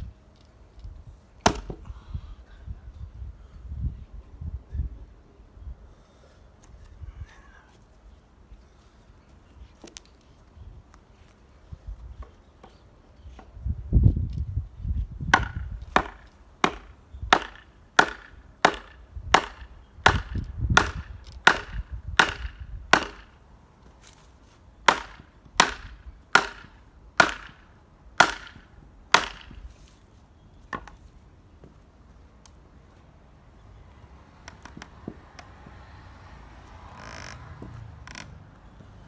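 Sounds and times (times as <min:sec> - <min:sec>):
axe chopping firewood: 0:01.4 - 0:01.8, 0:15.3 - 0:23.4, 0:24.9 - 0:29.9.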